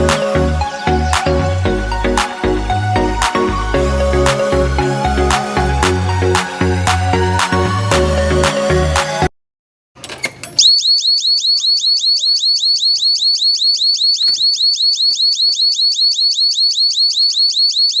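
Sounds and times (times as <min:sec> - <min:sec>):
fire alarm sweeping tone: 0:00.0 - 0:08.4, 0:10.6 - 0:18.0
clicks: 0:14.2 - 0:15.8.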